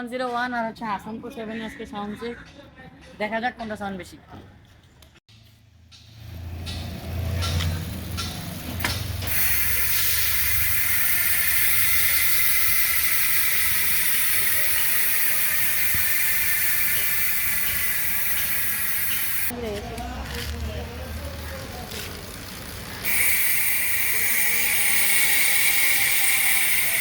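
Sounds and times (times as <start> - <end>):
bike freehub clicking buzz: 7.4 - 19.6, 21.4 - 27.0.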